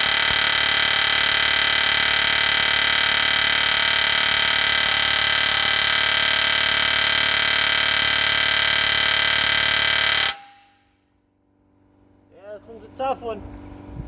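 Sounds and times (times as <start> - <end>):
air hammer hammering metal: 0.0 - 10.8.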